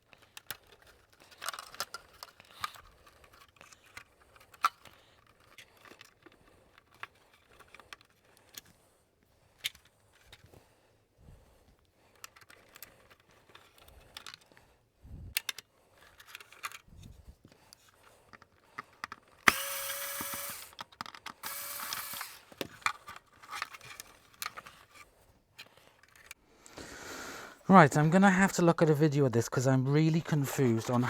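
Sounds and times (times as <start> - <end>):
clicks and rattles of parts: 0.0 - 8.8, 9.5 - 10.6, 11.7 - 14.7, 15.3 - 26.4, 30.2 - 31.0
handheld power drill running: 19.4 - 22.8.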